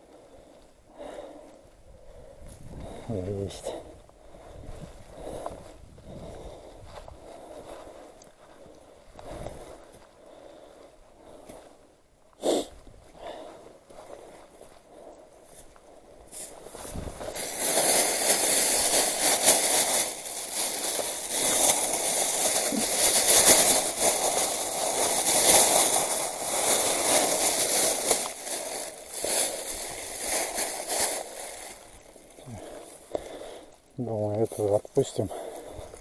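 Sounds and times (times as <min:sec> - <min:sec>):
rustling and crackling: 0:16.3 - 0:36.0.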